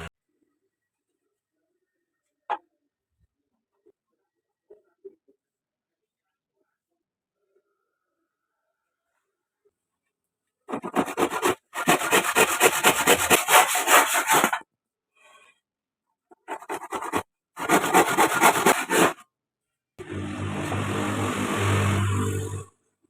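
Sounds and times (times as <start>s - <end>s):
hand tool working wood: 10.7s - 14.6s, 16.4s - 19.2s.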